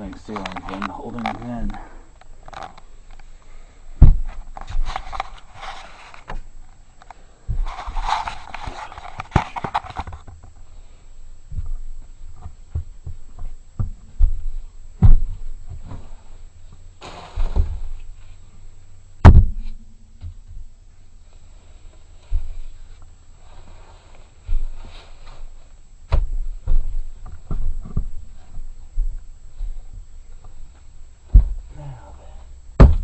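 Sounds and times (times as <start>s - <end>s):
rustling: 0.0s - 33.0s
heavy thuds on wooden boards: 3.9s - 5.2s, 11.5s - 16.8s, 19.2s - 20.7s, 26.0s - 32.0s, 32.7s - 33.0s.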